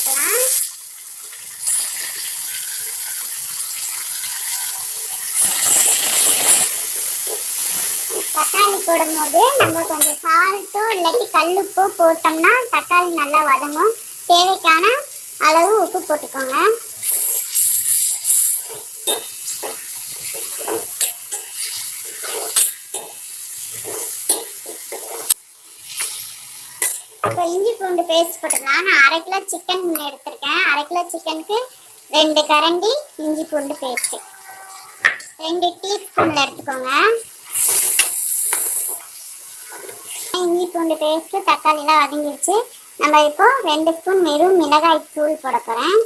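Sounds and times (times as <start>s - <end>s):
shallots sizzling in oil: 0.0s - 46.0s
spatula scraping a pan: 3.8s - 8.4s, 17.0s - 26.9s, 34.0s - 35.1s.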